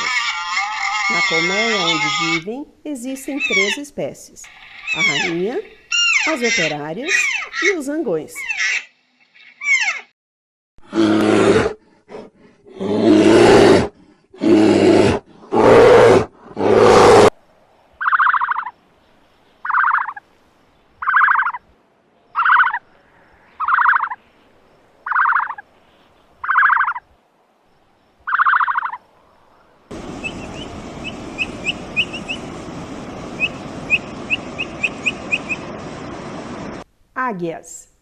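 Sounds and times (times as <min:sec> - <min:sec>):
bird rattling calls: 0:04.4 - 0:07.8, 0:23.6 - 0:24.2, 0:25.1 - 0:25.6
outdoor hiss: 0:14.9 - 0:18.0, 0:18.6 - 0:21.0, 0:21.6 - 0:26.4, 0:27.0 - 0:28.3, 0:29.0 - 0:38.0
high bird chirps: 0:23.6 - 0:24.2, 0:25.1 - 0:25.6, 0:28.3 - 0:29.0, 0:30.1 - 0:32.5, 0:33.3 - 0:35.7.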